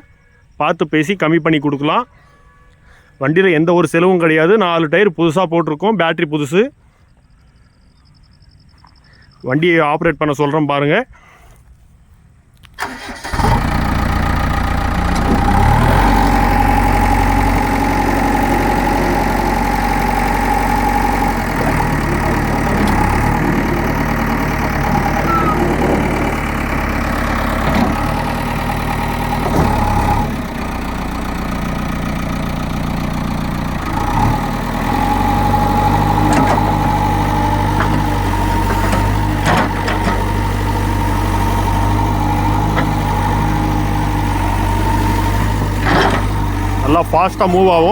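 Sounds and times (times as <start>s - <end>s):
diesel engine running: 12.8s - 47.9s.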